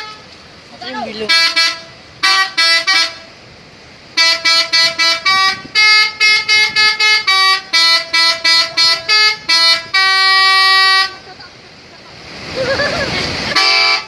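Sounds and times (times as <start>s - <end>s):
musical bus air horn toots: 0.0s - 0.3s, 1.3s - 3.3s, 4.2s - 11.2s, 13.5s - 14.0s.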